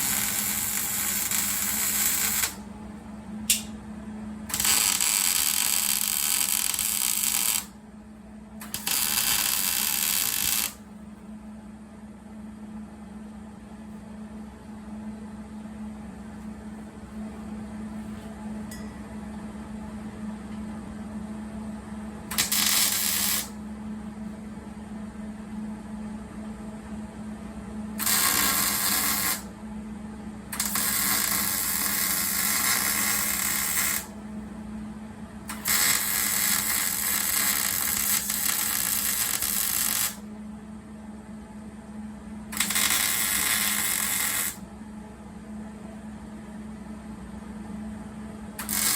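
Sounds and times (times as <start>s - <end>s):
welding arc crackling: 0.0s - 2.6s, 4.5s - 7.7s, 8.6s - 10.8s, 22.3s - 23.5s, 28.0s - 29.5s, 30.6s - 34.1s, 35.5s - 40.2s, 42.6s - 44.6s, 48.6s - 48.9s
steady low hum: 0.0s - 48.9s.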